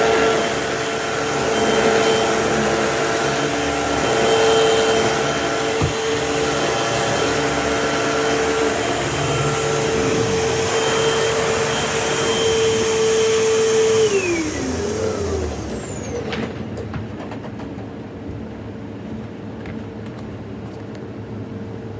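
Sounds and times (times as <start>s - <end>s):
motor winding down: 0.0s - 16.3s
vacuum cleaner whine: 0.0s - 16.9s.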